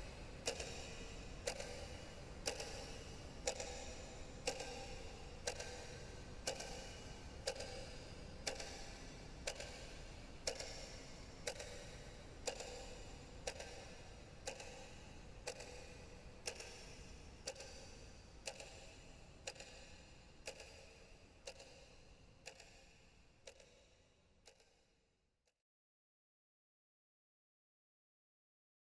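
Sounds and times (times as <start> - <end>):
clock ticking: 0.0 - 22.8, 23.4 - 24.7.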